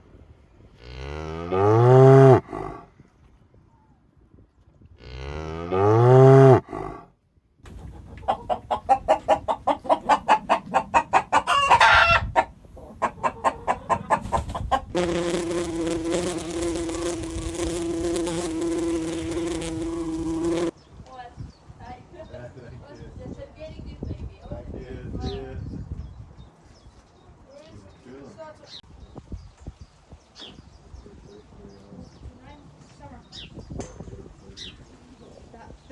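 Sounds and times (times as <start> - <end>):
rapid repeated animal calls: 7.9 - 14.8
rising and falling animal call: 8.2 - 17.1.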